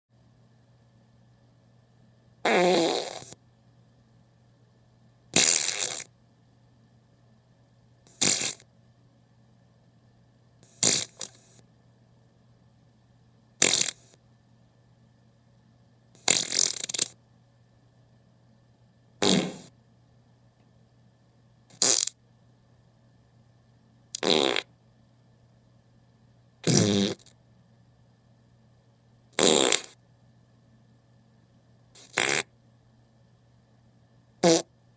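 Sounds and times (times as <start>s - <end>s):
short fart sounds: 2.4s - 3.4s, 5.4s - 6.1s, 8.1s - 8.6s, 10.7s - 11.5s, 13.6s - 14.2s, 16.2s - 17.2s, 19.2s - 19.7s, 21.7s - 22.2s, 24.2s - 24.7s, 26.6s - 27.3s, 29.4s - 30.0s, 32.0s - 32.5s, 34.4s - 34.7s.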